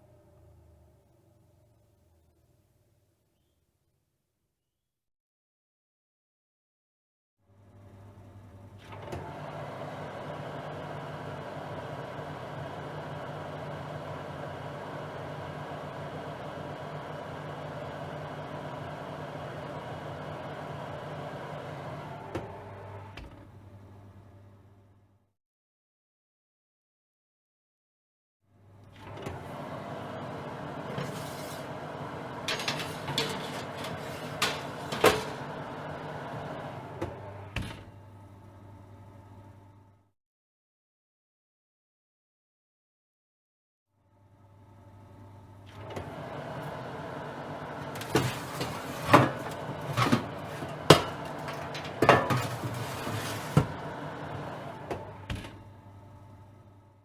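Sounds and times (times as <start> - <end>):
oven clicks and clunks: 30.8 - 35.9, 47.7 - 55.6.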